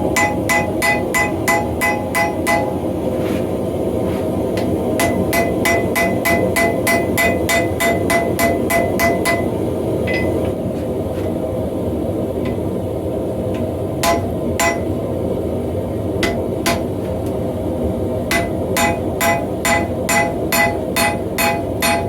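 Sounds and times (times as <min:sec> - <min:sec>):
hammer ringing on anvil: 0:00.0 - 0:03.0, 0:05.0 - 0:10.4, 0:14.0 - 0:15.0, 0:16.2 - 0:16.9, 0:18.3 - 0:22.0
gas forge burner roar: 0:00.0 - 0:22.0.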